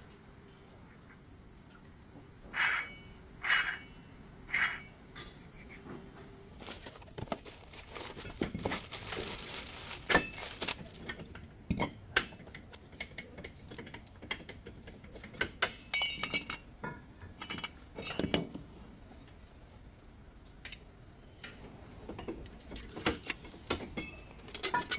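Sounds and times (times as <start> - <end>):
metal tools clinking and knocking: 13.8 - 18.6.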